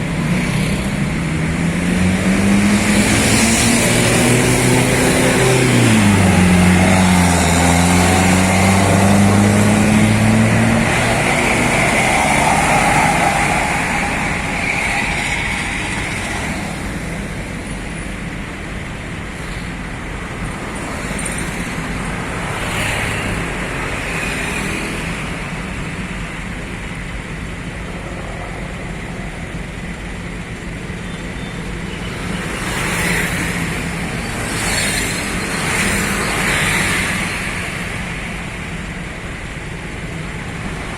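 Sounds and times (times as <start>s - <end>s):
heavy vehicle engine humming: 0.0s - 22.5s, 25.0s - 32.6s
highway traffic noise: 0.0s - 40.9s.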